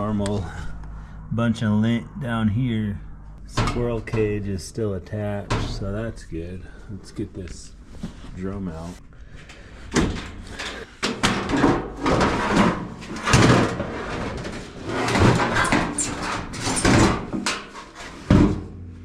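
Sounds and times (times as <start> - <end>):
metal clunks and bangs: 3.5 - 4.4, 5.4 - 6.1, 9.9 - 19.0.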